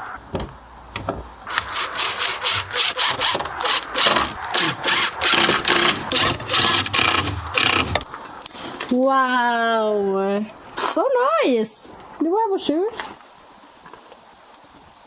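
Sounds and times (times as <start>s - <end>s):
hand tool rubbing on wood: 1.2s - 8.1s.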